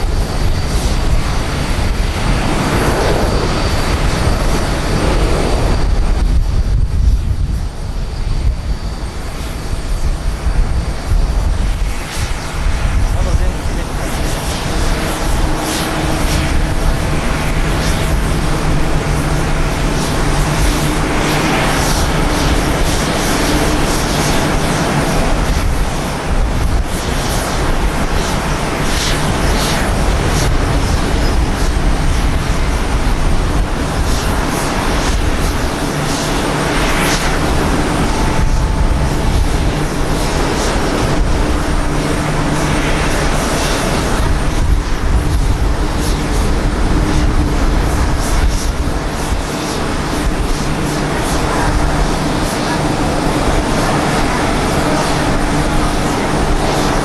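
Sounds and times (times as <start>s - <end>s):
jet engines rushing: 0.0s - 57.0s
faint hum tones: 29.8s - 57.0s.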